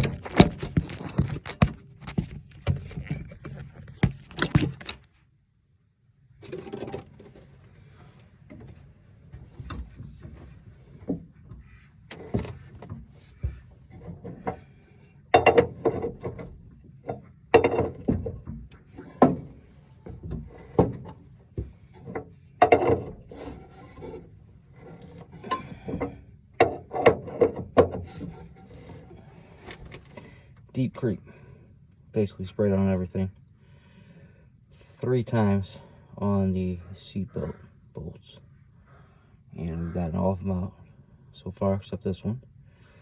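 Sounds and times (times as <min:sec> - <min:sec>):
metal clanks and scraping: 0:00.0 - 0:05.1, 0:06.4 - 0:30.6.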